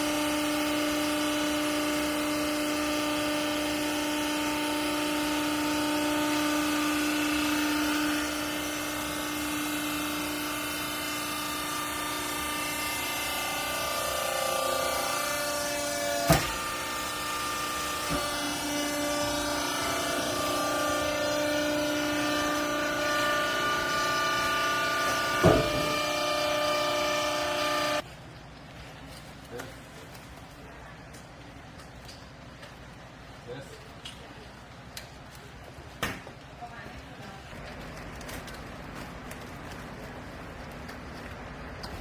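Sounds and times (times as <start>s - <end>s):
hydraulic baler motor whine: 0.0s - 28.0s.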